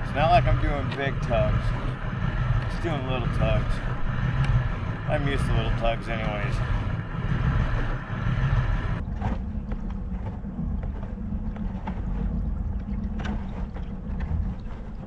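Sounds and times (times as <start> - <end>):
water around kayak: 0.0 - 15.0
wind rumble on microphone: 0.0 - 15.0.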